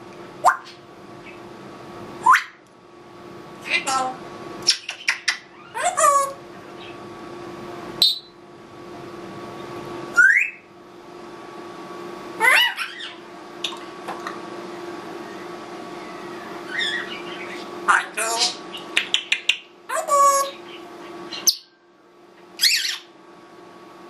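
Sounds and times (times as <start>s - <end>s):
parrot pulsing sweeping call: 2.2s - 2.6s, 8.0s - 8.3s, 10.2s - 10.6s, 12.4s - 13.2s, 15.2s - 18.6s, 22.6s - 23.1s
parrot rising whistle: 2.2s - 2.6s, 8.0s - 8.4s, 10.1s - 10.7s, 15.2s - 17.6s, 22.6s - 23.1s.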